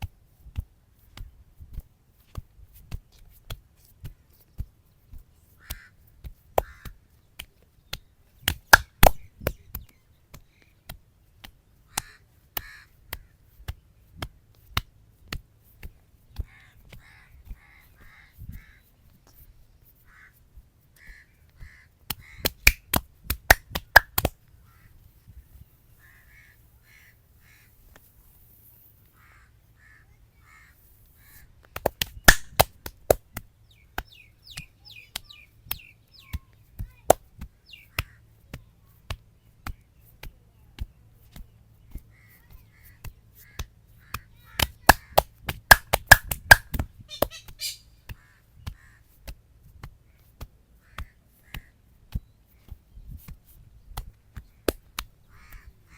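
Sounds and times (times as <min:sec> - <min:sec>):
hands slapping a head: 0:05.6 - 0:17.0, 0:22.1 - 0:24.5, 0:31.6 - 0:42.1, 0:43.0 - 0:55.7.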